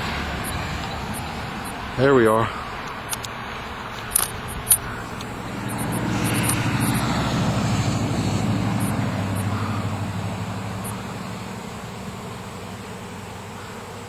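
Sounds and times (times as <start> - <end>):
honey bees buzzing: 0.0 - 14.0
sharp clicks: 2.8 - 3.4, 4.0 - 7.2.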